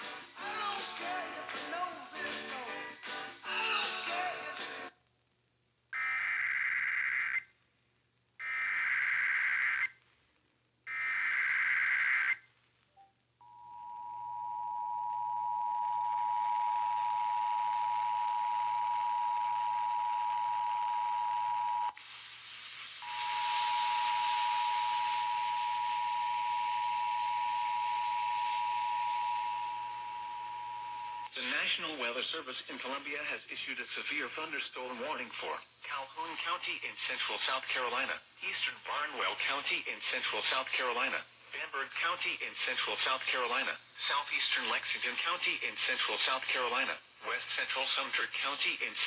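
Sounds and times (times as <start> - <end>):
radio hiss: 21.6 - 25.6, 28.0 - 49.0.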